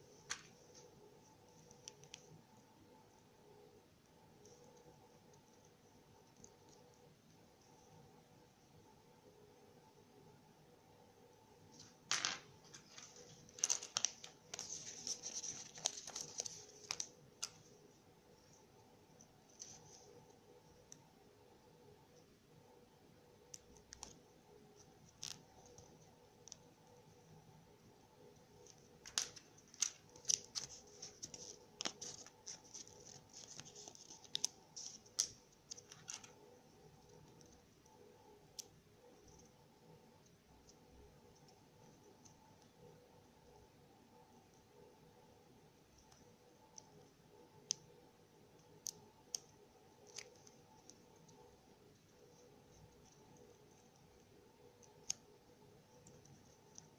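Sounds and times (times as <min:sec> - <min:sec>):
faint room noise: 0:00.0 - 0:56.9
wrapping crinkling and tearing: 0:12.8 - 0:17.6, 0:29.0 - 0:36.4.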